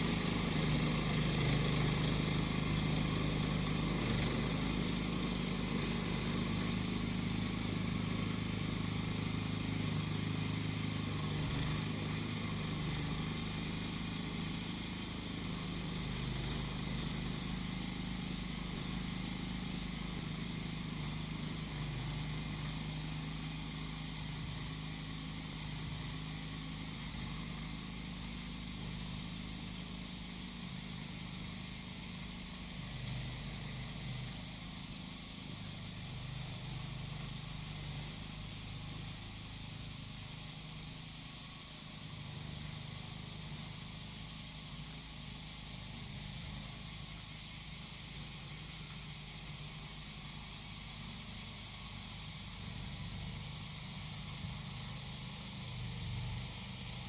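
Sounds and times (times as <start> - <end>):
grass cutter engine running: 0.0 - 57.0
cicadas droning: 11.8 - 57.0.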